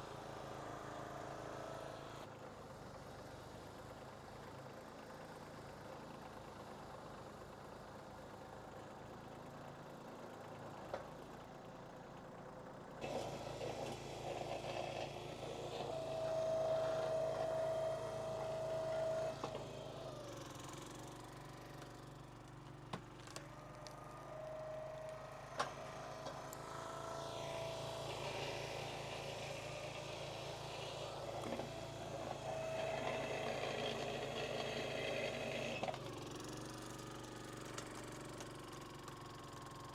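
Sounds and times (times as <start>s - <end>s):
hydraulic whine: 0.0s - 2.3s, 13.0s - 22.1s, 23.2s - 38.5s
engine running steadily: 0.0s - 39.9s.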